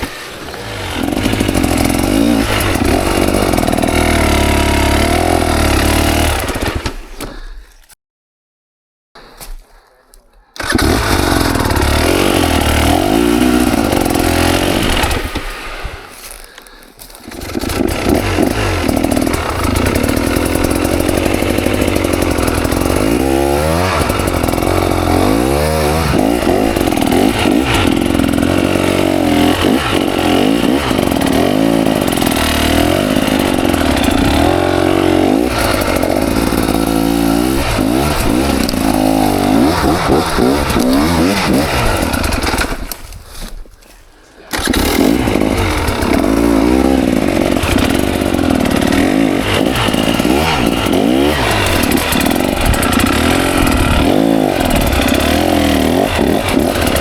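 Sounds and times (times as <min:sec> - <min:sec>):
dirt bike engine revving: 0:00.0 - 0:07.0, 0:10.6 - 0:43.0, 0:44.5 - 0:57.0.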